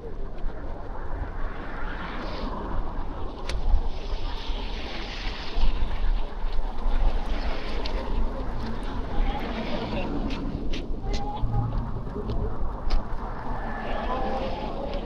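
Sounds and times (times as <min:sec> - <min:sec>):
wind buffeting microphone: 0:00.0 - 0:15.0
street traffic: 0:07.2 - 0:15.0.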